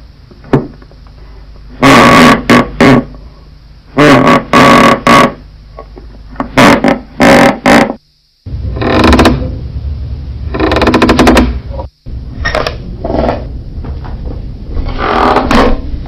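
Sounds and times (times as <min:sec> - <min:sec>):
distorted wooden floorboards creaking: 0:01.8 - 0:03.1, 0:04.0 - 0:05.4, 0:06.3 - 0:09.7, 0:10.3 - 0:16.0.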